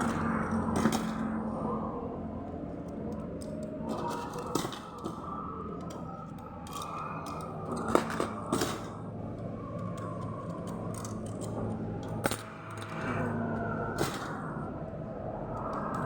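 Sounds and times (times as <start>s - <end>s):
objects clicking when handled: 2.8s - 14.4s.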